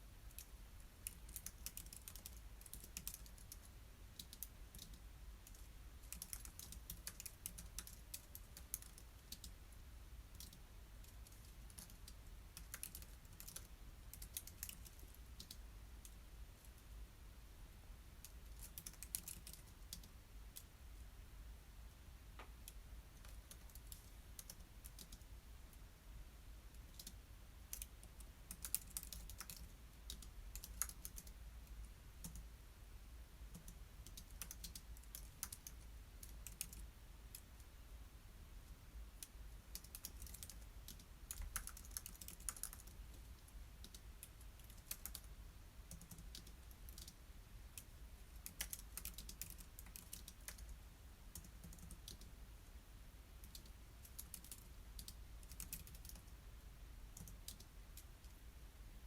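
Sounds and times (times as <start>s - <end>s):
computer keyboard typing: 0.3s - 9.6s, 10.3s - 16.8s, 18.2s - 20.7s, 22.6s - 25.2s, 26.8s - 31.4s, 32.2s - 32.5s, 33.5s - 37.5s, 39.7s - 45.3s, 45.9s - 47.2s, 47.8s - 52.3s, 53.4s - 56.3s, 57.2s - 58.1s.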